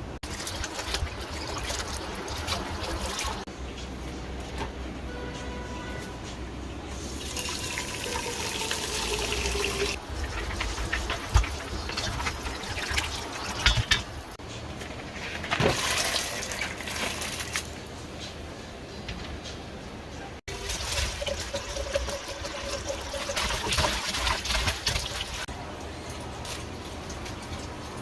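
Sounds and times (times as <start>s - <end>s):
tap water running into sink: 7.2s - 14.0s
knocks and clatter: 10.0s - 15.9s.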